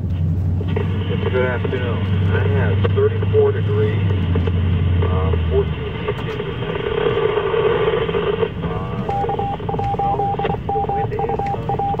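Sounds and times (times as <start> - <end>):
muffled voice over radio: 0.6 - 9.4, 10.4 - 12.0
morse code beeping tone: 8.8 - 12.0.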